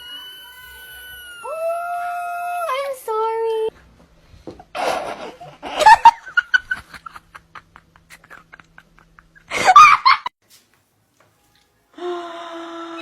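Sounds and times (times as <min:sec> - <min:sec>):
person laughing hard: 0:04.8 - 0:10.3.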